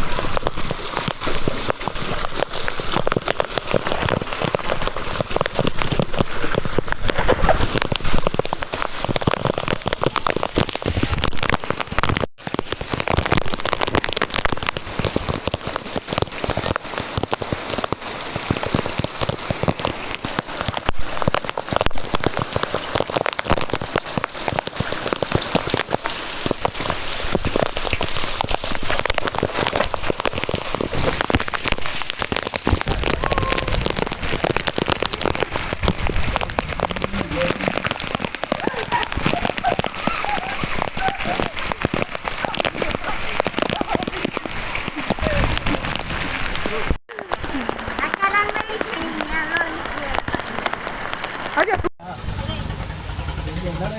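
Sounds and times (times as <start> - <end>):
heavy rain on hard surfaces: 0.0 - 53.9.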